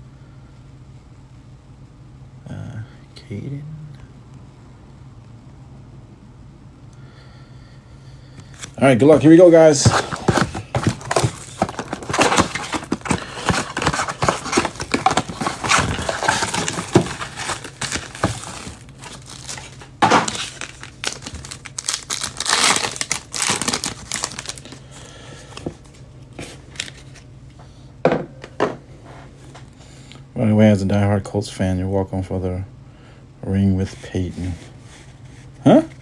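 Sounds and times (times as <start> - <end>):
plastic wrapping crinkling and tearing: 8.6 - 25.0.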